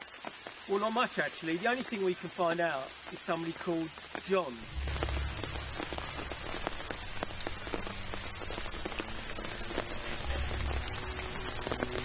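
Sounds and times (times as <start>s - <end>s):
rain falling: 0.0s - 12.0s
low hum: 4.6s - 12.0s.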